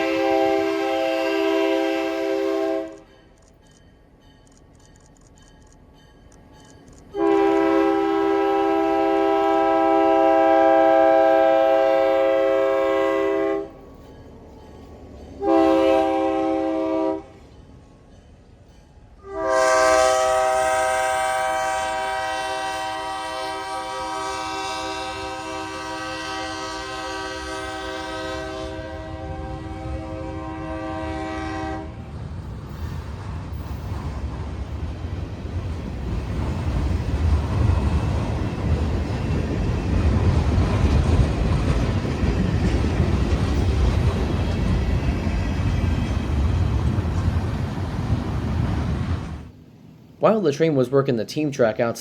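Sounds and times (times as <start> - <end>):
locomotive air horn blasts: 0.0 - 3.1, 7.1 - 13.8, 15.4 - 17.4, 19.2 - 32.0
diesel train rumble: 0.0 - 51.8.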